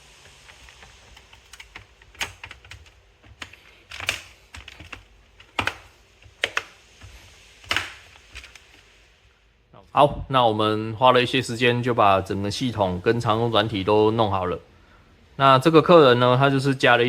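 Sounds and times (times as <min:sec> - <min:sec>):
laptop keyboard typing: 0:00.4 - 0:06.7.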